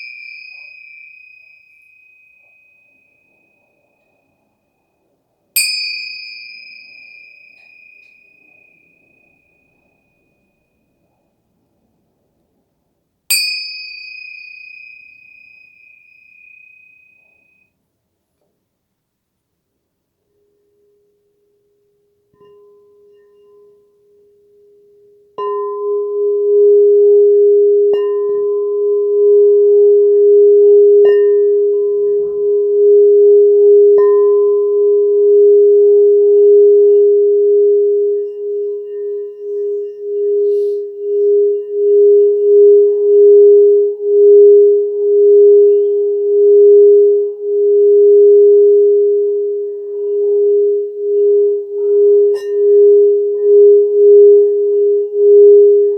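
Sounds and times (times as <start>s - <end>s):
singing bowl strike: 0.0s - 4.2s, 25.4s - 55.9s
singing bowl tone: 0.0s - 4.8s, 5.6s - 11.2s, 13.3s - 17.8s, 22.3s - 55.9s.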